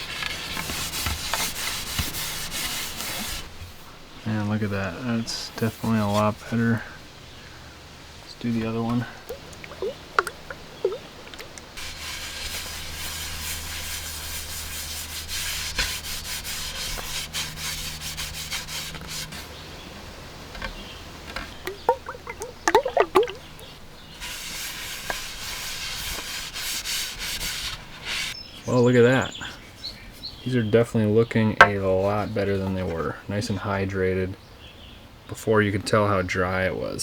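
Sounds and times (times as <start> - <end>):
hand rubbing wooden paddle: 0.0 - 3.5, 9.8 - 19.5, 24.2 - 28.4.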